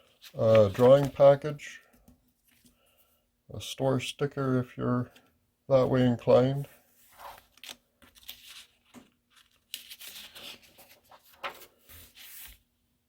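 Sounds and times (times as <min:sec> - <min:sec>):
paper rustling and crinkling: 0:00.0 - 0:01.5, 0:07.0 - 0:12.7.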